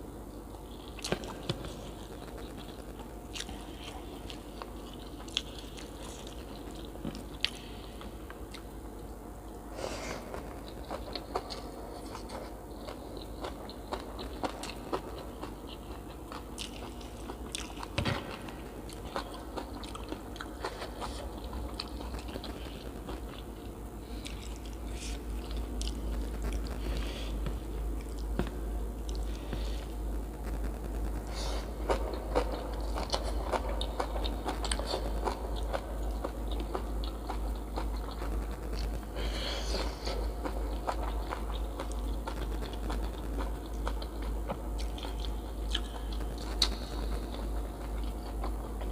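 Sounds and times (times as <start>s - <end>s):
steady low hum: 0.0s - 48.9s
person chewing crunchy food: 10.1s - 30.6s, 31.2s - 48.9s.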